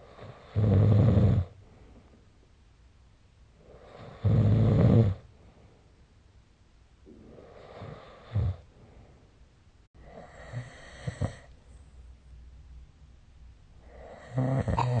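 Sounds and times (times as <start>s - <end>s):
loud low-pitched snores: 0.1s - 1.6s, 3.9s - 5.2s, 7.3s - 8.6s, 10.0s - 11.5s, 13.9s - 15.0s
breathy breaths: 7.1s - 9.4s.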